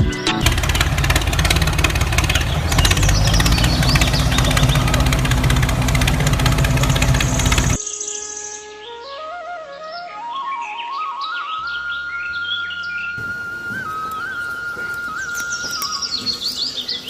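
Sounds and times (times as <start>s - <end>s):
small motor tool rattling: 0.4s - 7.8s.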